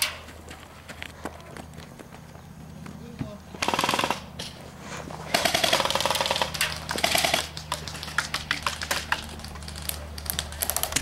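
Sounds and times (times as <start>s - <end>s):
steady low hum: 0.0s - 11.0s
airsoft guns firing: 3.6s - 4.4s, 5.3s - 9.9s.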